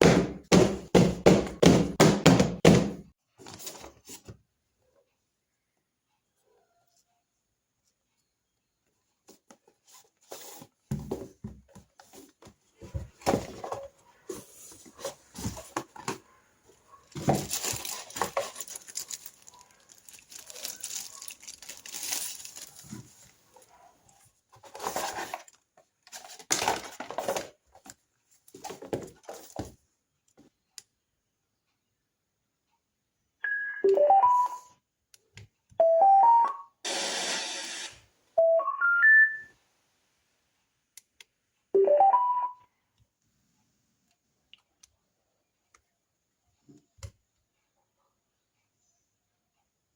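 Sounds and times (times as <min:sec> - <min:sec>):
plastic gadget being handled: 0:17.1 - 0:23.7
electronic alarm beeps: 0:33.4 - 0:34.7, 0:35.8 - 0:36.7, 0:38.4 - 0:39.5.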